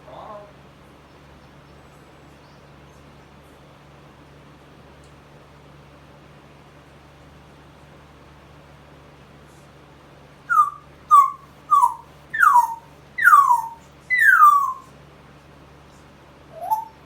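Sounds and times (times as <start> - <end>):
parrot whistled whines: 10.5 - 14.9, 16.5 - 17.0.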